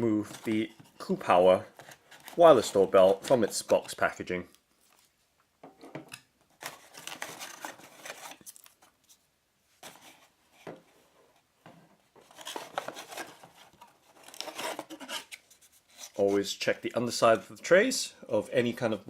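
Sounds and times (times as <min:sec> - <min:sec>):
packaging rustling and scraping: 0:00.2 - 0:04.0, 0:06.5 - 0:09.2, 0:09.8 - 0:11.4, 0:12.0 - 0:16.6.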